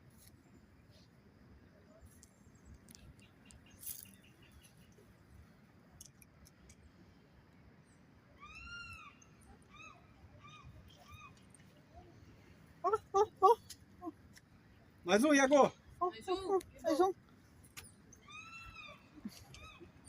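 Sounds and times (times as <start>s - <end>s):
faint animal calls: 8.3s - 14.2s, 18.1s - 20.0s.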